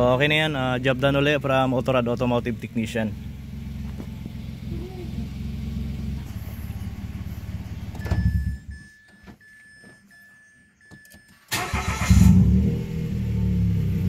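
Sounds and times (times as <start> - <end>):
car engine starting and idling: 0.0 - 14.0
electronic beep tone: 8.0 - 11.5.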